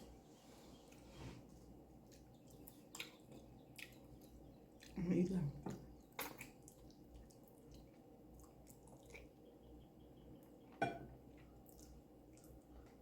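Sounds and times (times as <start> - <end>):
person chewing with mouth clicks: 2.0 - 5.0.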